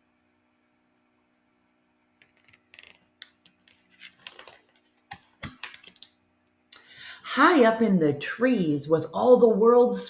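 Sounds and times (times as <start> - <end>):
book page turning: 2.2 - 6.2.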